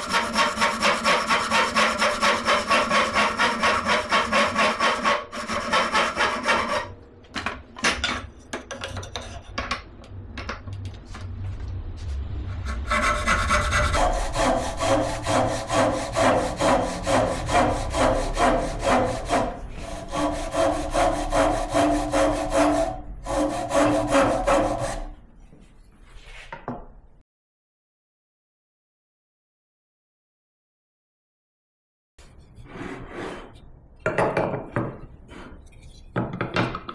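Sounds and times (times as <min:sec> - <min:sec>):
hand saw cutting wood: 0:00.0 - 0:06.9, 0:12.6 - 0:25.2.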